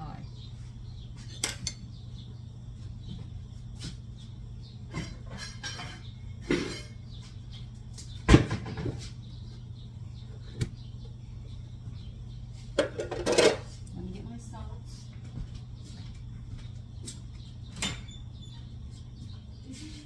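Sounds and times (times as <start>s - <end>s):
steady low hum: 0.0s - 20.0s
utensils and dishes clattering: 1.3s - 1.9s, 4.9s - 7.0s, 12.8s - 13.8s.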